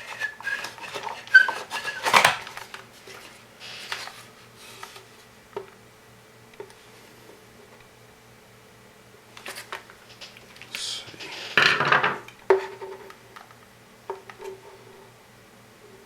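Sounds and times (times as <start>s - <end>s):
loud clatter: 2.0s - 2.5s
tools clicking on workbench: 2.0s - 2.5s.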